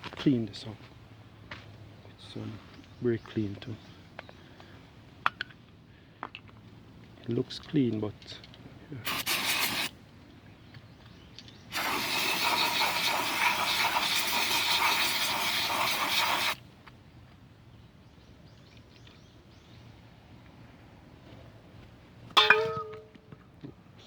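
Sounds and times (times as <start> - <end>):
aerosol can spraying: 9.1 - 9.9, 11.7 - 16.6.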